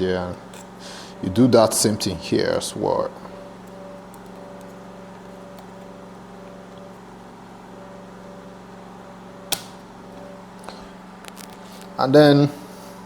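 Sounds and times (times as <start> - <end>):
faint steady tones: 0.0 - 13.0
low background hum: 0.0 - 13.0
sharp click: 9.5 - 9.8.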